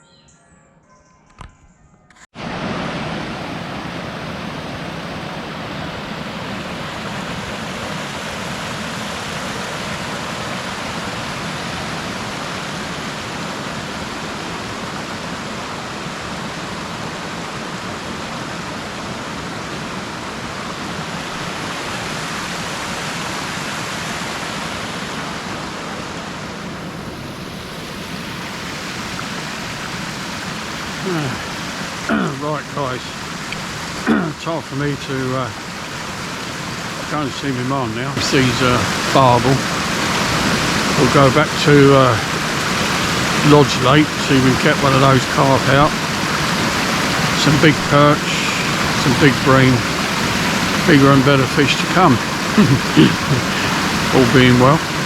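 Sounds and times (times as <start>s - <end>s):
river water rushing: 2.4s - 55.0s.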